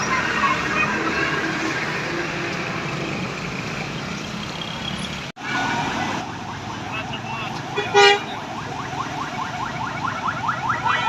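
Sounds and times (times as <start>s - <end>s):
bus engine passing: 0.0s - 7.8s
road noise: 0.0s - 11.0s.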